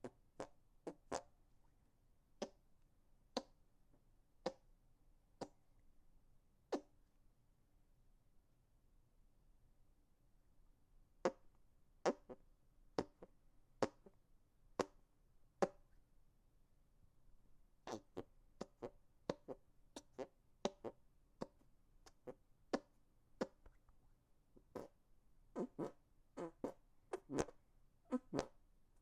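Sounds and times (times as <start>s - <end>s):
hand fart pops: 0.0s - 1.3s, 2.4s - 2.6s, 3.4s - 3.6s, 4.4s - 4.6s, 5.4s - 5.6s, 6.7s - 6.9s, 11.2s - 12.4s, 13.0s - 14.2s, 14.8s - 15.0s, 15.6s - 15.9s, 17.9s - 23.8s, 24.7s - 25.0s, 25.6s - 28.6s.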